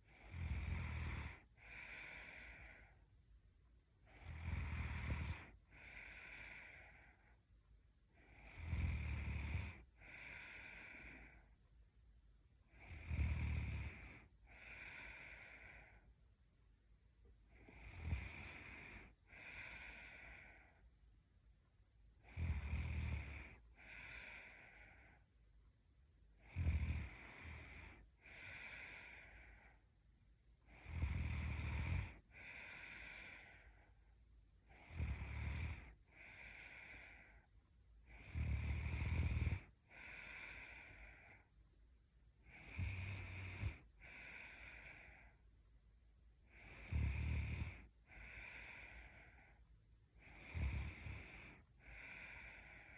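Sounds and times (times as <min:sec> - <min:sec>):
woman snoring: 0:00.0 - 0:03.0, 0:04.0 - 0:07.3, 0:08.2 - 0:11.6, 0:12.7 - 0:16.0, 0:17.5 - 0:20.8, 0:22.2 - 0:25.2, 0:26.4 - 0:29.8, 0:30.7 - 0:33.9, 0:34.7 - 0:37.5, 0:38.1 - 0:41.4, 0:42.4 - 0:45.4, 0:46.5 - 0:49.6, 0:50.2 - 0:52.9.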